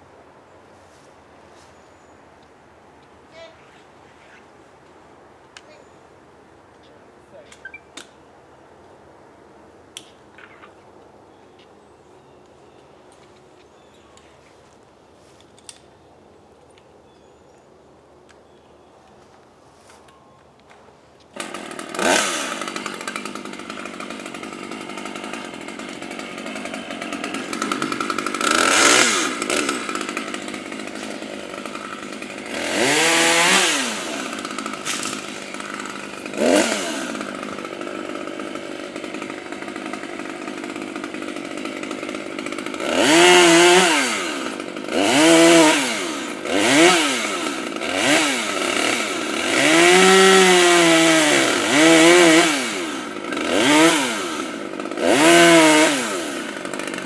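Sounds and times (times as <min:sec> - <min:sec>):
chainsaw idling and revving: 0:21.4 - 0:57.0.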